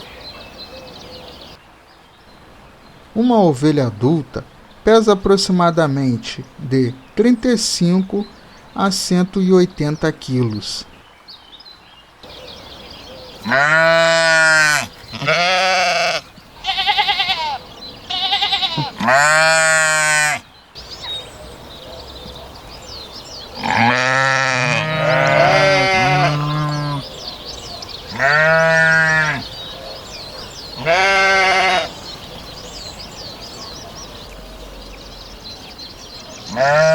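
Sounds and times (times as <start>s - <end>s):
birds chirping faintly: 0.0s - 36.9s
sheep bleating: 13.4s - 20.4s, 23.6s - 27.1s, 28.1s - 29.5s, 30.8s - 32.0s, 36.5s - 36.9s.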